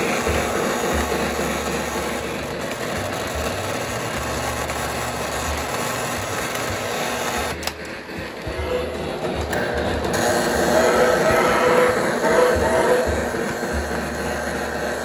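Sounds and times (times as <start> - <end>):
toy train motor whir: 0.0 - 15.0.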